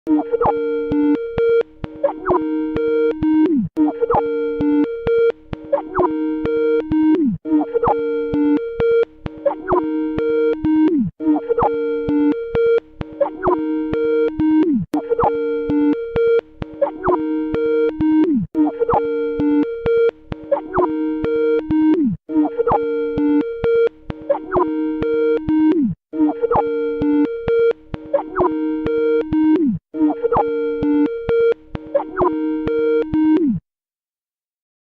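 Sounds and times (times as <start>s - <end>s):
electronic ringtone melody: 2.0s - 3.1s.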